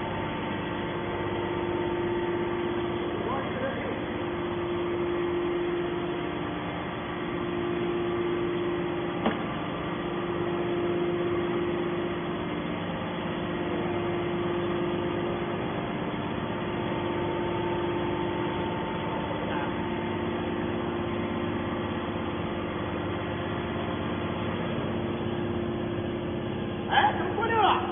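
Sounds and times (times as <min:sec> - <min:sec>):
baler motor and pump humming: 0:00.0 - 0:27.9.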